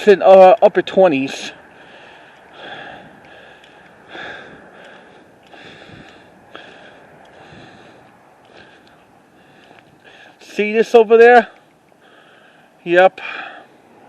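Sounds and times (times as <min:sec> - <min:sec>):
person breathing: 0:01.7 - 0:10.4, 0:11.5 - 0:14.0.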